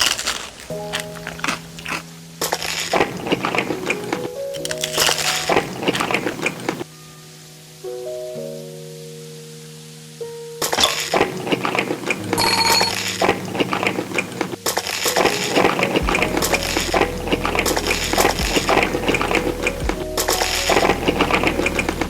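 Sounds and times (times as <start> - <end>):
cutlery clinking on dishes: 12.4 - 13.1.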